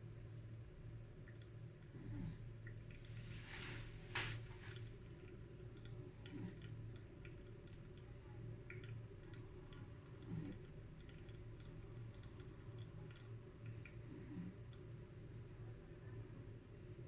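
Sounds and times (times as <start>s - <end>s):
low room hum: 0.0s - 17.0s
coffee dripping clicks: 4.2s - 14.0s.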